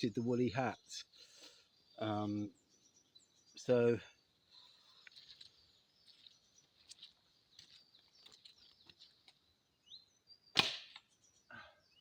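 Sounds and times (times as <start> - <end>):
faint birdsong chirping: 0.0 - 12.0
arrow cracking through helmet: 10.5 - 11.0.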